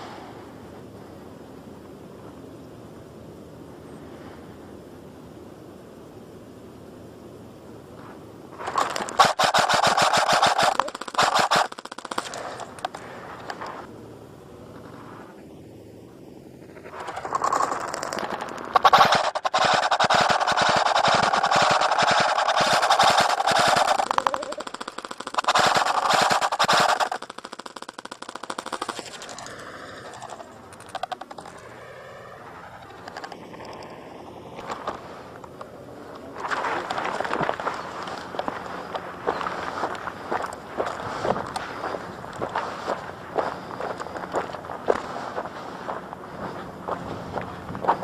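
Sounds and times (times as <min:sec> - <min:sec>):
scattered clicks: 0:08.6 - 0:13.8, 0:16.6 - 0:31.8, 0:32.7 - 0:48.0
airsoft gun firing bursts: 0:08.7 - 0:13.0, 0:16.9 - 0:31.6.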